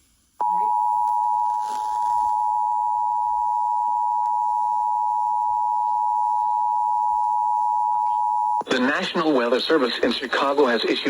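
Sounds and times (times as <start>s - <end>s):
two-tone alarm: 0.4s - 8.7s.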